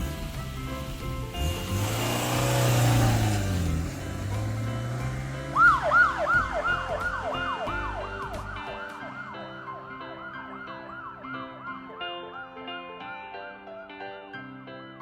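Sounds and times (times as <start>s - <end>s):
low engine hum: 0.0s - 8.8s
light background music: 0.0s - 15.0s
fast police siren: 5.5s - 12.0s.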